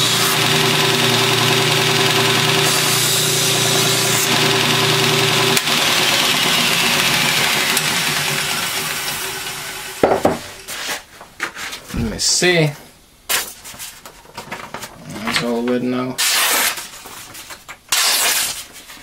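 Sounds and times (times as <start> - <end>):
belt grinder whining: 0.0 - 10.7.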